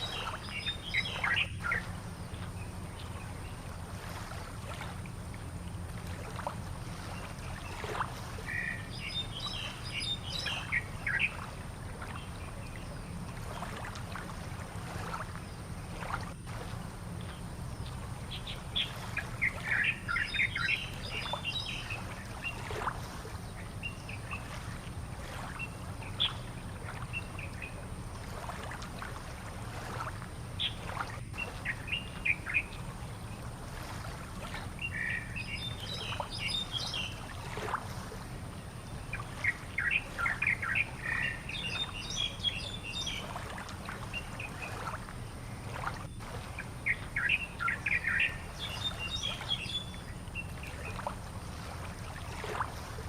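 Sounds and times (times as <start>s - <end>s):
birds chirping: 0.0s - 3.7s, 8.5s - 11.5s, 17.2s - 24.6s, 25.4s - 27.8s, 30.6s - 33.5s, 34.6s - 37.3s, 38.5s - 51.1s
steady low hum: 0.0s - 53.0s.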